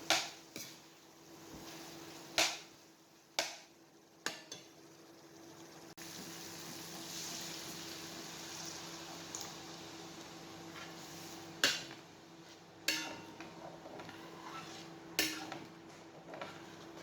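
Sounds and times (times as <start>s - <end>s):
food hissing in pot: 5.4s - 11.6s, 14.1s - 15.5s.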